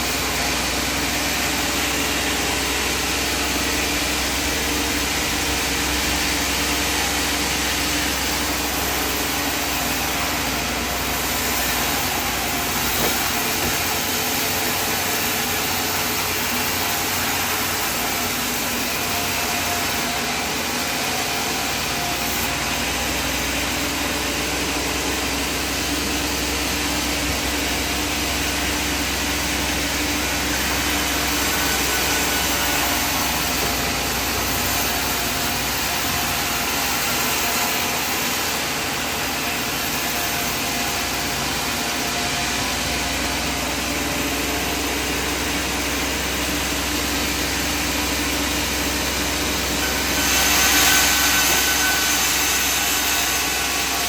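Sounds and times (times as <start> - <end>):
sawmill machinery hum: 0.0 - 54.0.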